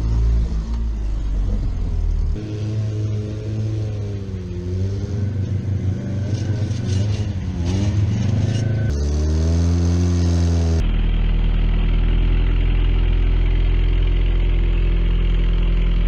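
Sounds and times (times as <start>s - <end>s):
car engine revving: 0.0s - 11.1s.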